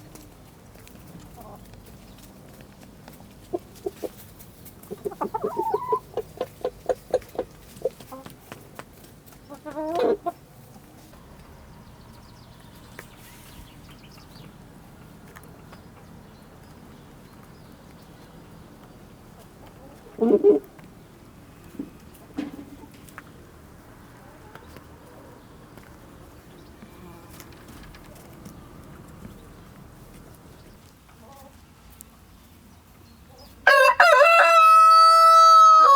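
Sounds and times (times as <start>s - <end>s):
chickens clucking: 0.0s - 31.7s
faint yard sounds: 0.0s - 35.9s.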